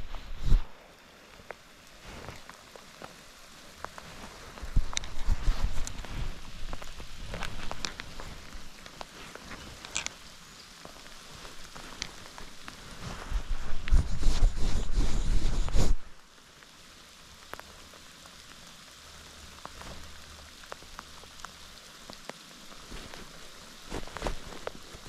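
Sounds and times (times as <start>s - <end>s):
rain falling: 0.0s - 25.0s.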